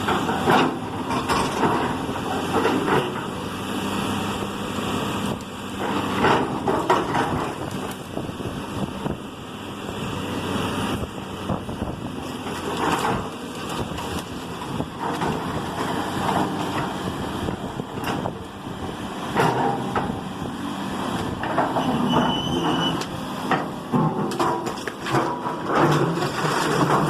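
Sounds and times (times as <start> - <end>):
demolition machine engine running: 0.0 - 27.0
high squeal: 21.8 - 23.0
house structure cracking and crashing: 24.3 - 27.0.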